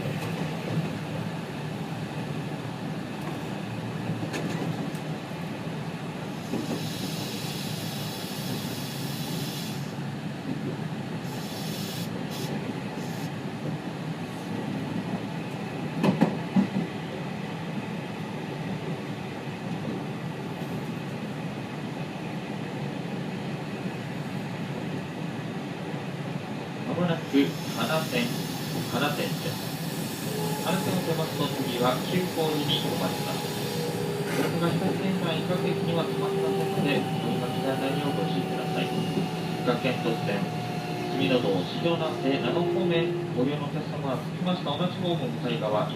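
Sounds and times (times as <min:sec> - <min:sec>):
train wheels and motor rumbling: 0:27.4 - 0:45.9.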